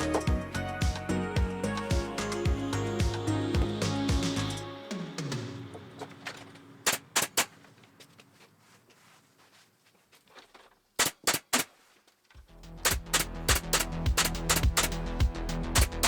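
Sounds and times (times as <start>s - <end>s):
background music with steady beat: 0.0s - 7.8s, 12.4s - 16.0s
staple gun firing: 6.9s - 7.6s, 11.0s - 11.7s, 12.9s - 14.9s.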